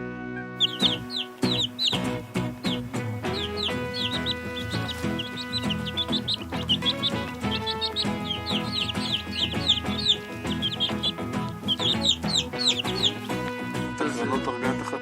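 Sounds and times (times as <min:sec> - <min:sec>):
background music: 0:00.0 - 0:15.0
chicks peeping: 0:00.6 - 0:13.7.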